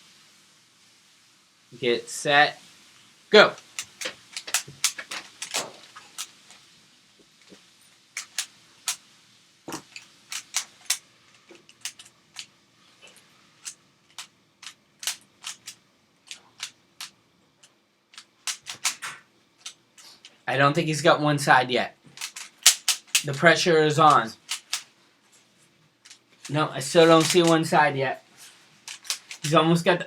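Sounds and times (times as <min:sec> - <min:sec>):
puzzle cube plastic clicks: 0:03.6 - 0:06.6, 0:08.2 - 0:09.0, 0:09.8 - 0:12.5, 0:13.6 - 0:17.2, 0:18.1 - 0:20.1, 0:22.1 - 0:23.4, 0:24.0 - 0:24.9, 0:26.0 - 0:27.7, 0:28.9 - 0:29.6.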